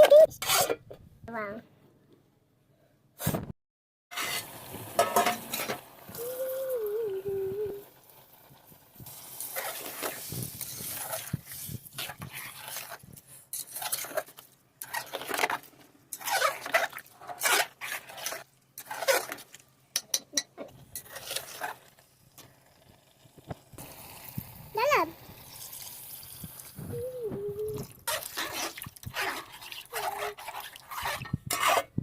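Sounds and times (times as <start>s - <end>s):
spoon stirring and scraping pot: 0.0s - 0.9s, 4.1s - 5.8s, 9.0s - 22.1s, 27.8s - 32.0s
spoon clinking against pot: 19.9s - 21.1s.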